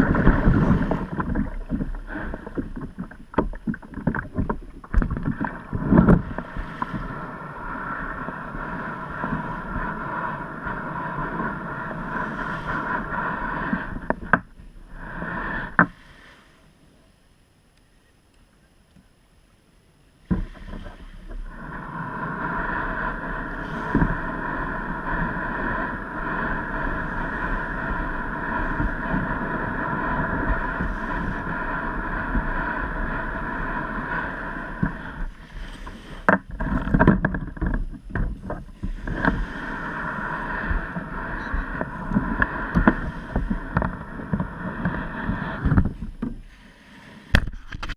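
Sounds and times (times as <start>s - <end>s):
boat motor running: 20.3s - 46.5s.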